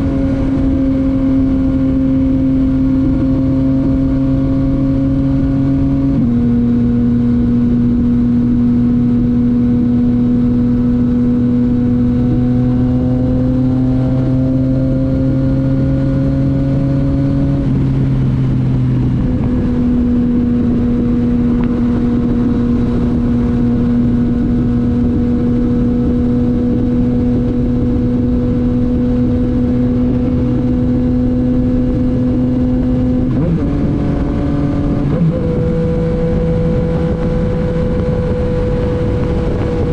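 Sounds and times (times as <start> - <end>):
motorcycle engine: 0.0 - 39.9
wind rushing: 16.4 - 39.9.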